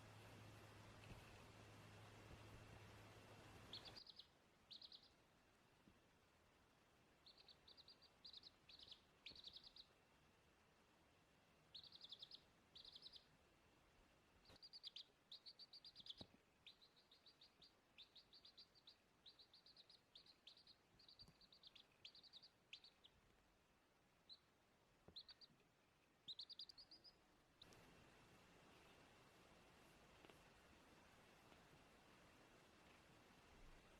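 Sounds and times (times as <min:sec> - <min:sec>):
chick peeping: 0:02.8 - 0:05.2, 0:07.2 - 0:10.0, 0:11.7 - 0:13.3, 0:14.4 - 0:23.3, 0:24.2 - 0:25.6, 0:26.2 - 0:27.9.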